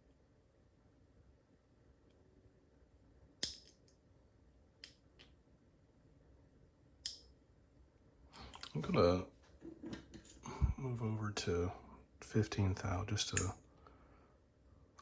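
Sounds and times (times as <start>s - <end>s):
lock picks clicking in padlock: 3.4s - 3.9s.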